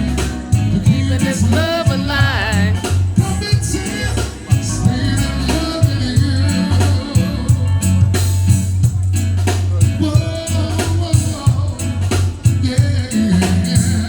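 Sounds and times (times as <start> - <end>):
reggae music with singing: 0.0 - 14.0.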